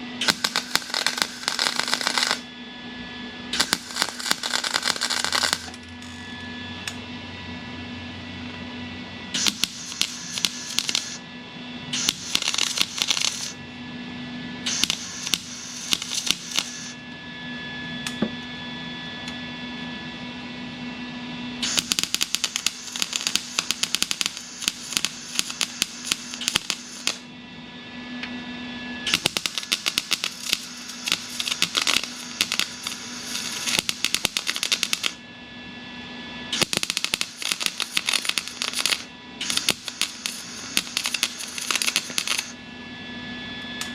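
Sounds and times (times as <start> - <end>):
steady low hum: 0.0 - 43.9
welder arc crackling: 0.2 - 2.5, 3.6 - 6.4, 9.4 - 11.2, 12.0 - 13.6, 14.7 - 17.0, 21.6 - 27.2, 29.1 - 35.2, 36.6 - 42.6.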